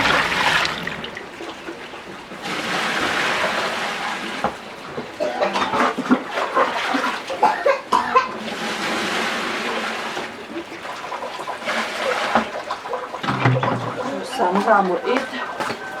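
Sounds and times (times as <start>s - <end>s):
water splashing and pouring: 0.0s - 16.0s
voices: 5.0s - 8.5s, 10.1s - 16.0s.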